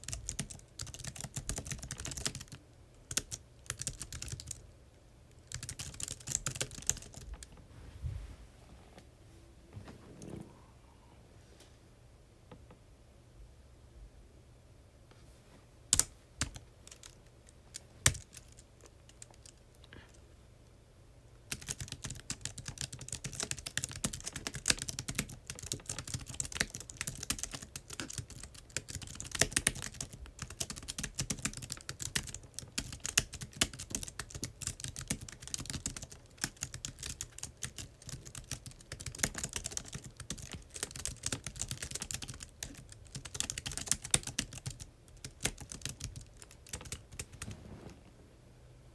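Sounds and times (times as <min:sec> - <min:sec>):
typing on computer keyboard: 0:00.0 - 0:04.6, 0:05.4 - 0:07.3, 0:18.0 - 0:19.6, 0:21.5 - 0:47.4.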